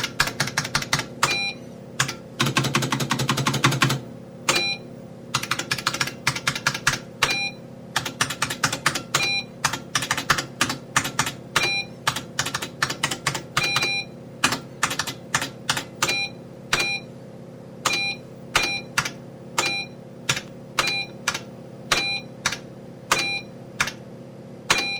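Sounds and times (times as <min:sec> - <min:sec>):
computer keyboard typing: 0:00.0 - 0:01.4, 0:02.0 - 0:04.7, 0:05.3 - 0:07.4, 0:08.0 - 0:16.2, 0:17.9 - 0:24.0
steady low hum: 0:00.0 - 0:24.9
short electronic beeps: 0:01.3 - 0:01.6, 0:16.1 - 0:17.1, 0:19.6 - 0:20.0, 0:20.8 - 0:21.2, 0:22.0 - 0:22.3, 0:23.2 - 0:23.5.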